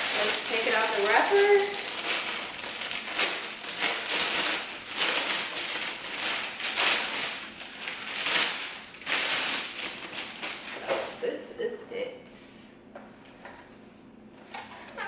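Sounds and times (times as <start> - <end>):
plastic wrapping crinkling: 0.0 - 11.2.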